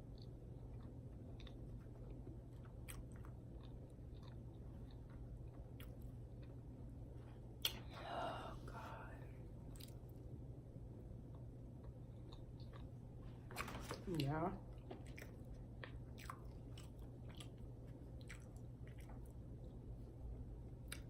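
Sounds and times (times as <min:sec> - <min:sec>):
chewing soft cake: 0:00.0 - 0:21.0.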